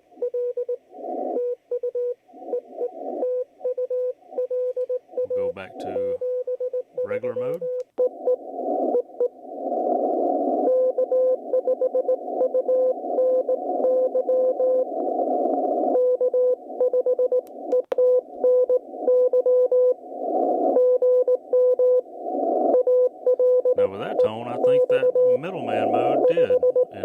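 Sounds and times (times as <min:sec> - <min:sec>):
radio static hiss: 0:00.9 - 0:01.4, 0:02.3 - 0:03.3, 0:05.2 - 0:06.4, 0:07.0 - 0:16.8, 0:17.5 - 0:27.0
morse code tone: 0:01.4 - 0:08.4, 0:16.0 - 0:17.4, 0:18.0 - 0:20.0, 0:22.8 - 0:27.0.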